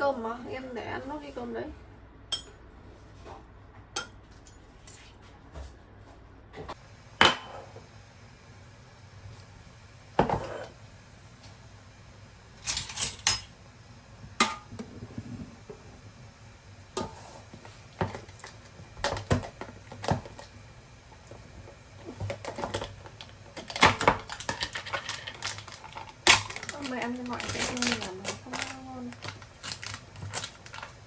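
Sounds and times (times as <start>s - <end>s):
dishes and utensils clattering: 12.6s - 13.5s.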